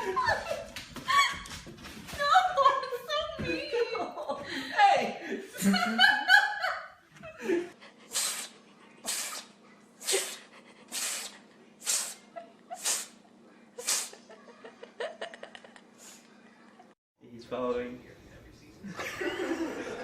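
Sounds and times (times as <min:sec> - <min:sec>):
pet hissy breath bursts: 0:08.0 - 0:13.2, 0:13.8 - 0:14.2.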